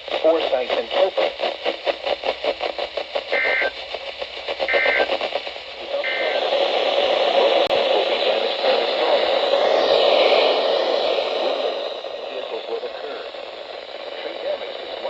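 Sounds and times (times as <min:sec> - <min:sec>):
radio static hiss: 0:00.0 - 0:15.0
digital data tone bursts: 0:03.4 - 0:03.8, 0:04.7 - 0:05.1.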